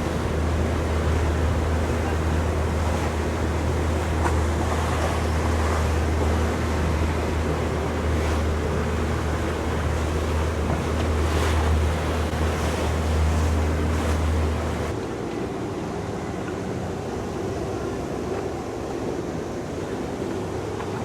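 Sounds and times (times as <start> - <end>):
wind on microphone: 0.0 - 15.0
motorboat engine rumble: 0.0 - 21.0.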